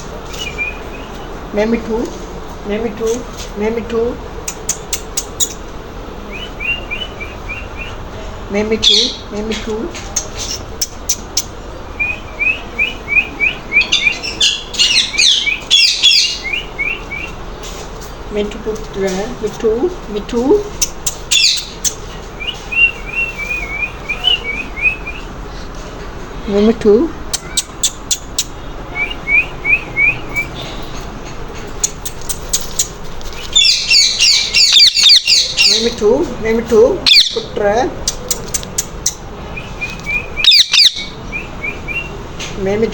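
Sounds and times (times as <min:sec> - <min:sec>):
parrot chirping: 0:00.0 - 0:01.5, 0:04.4 - 0:09.3, 0:10.2 - 0:17.5, 0:20.7 - 0:25.4, 0:27.3 - 0:31.0, 0:31.8 - 0:36.0, 0:37.0 - 0:42.3
parrot screeching: 0:33.6 - 0:35.8, 0:37.0 - 0:37.4, 0:39.8 - 0:42.0.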